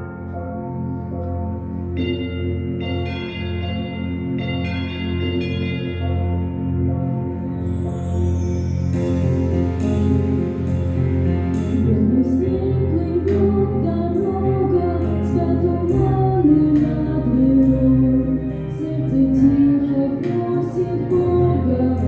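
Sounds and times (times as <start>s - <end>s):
instrumental accompaniment: 0.0s - 22.0s
person singing: 11.7s - 22.0s.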